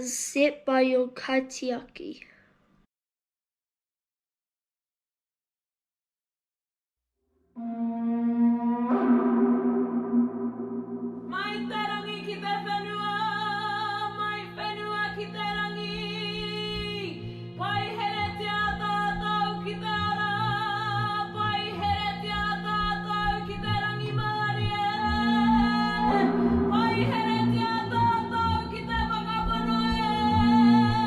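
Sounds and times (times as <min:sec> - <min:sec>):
sung notes with vibrato: 0:07.6 - 0:14.1, 0:15.9 - 0:31.0
sustained musical accompaniment: 0:07.6 - 0:31.0.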